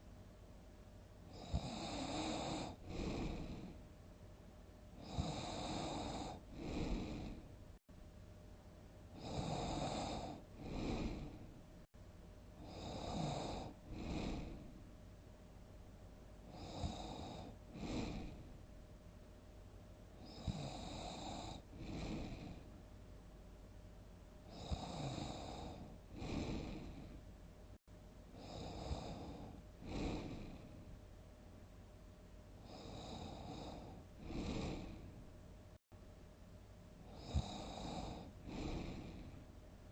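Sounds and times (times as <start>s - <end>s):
person snoring heavily: 1.3s - 3.8s, 5.0s - 7.5s, 9.2s - 11.5s, 12.6s - 14.8s, 16.5s - 18.5s, 20.2s - 22.6s, 24.5s - 27.2s, 28.4s - 30.8s, 32.6s - 35.1s, 37.1s - 39.4s.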